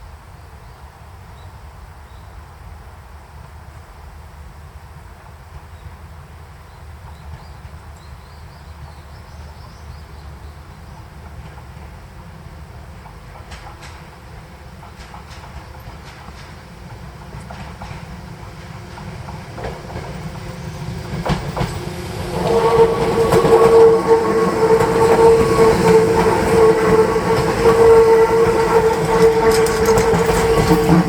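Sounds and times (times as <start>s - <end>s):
electric train passing: 6.2s - 31.0s
wheels clicking on rails: 10.8s - 31.0s
steady ringing tone: 19.8s - 22.8s.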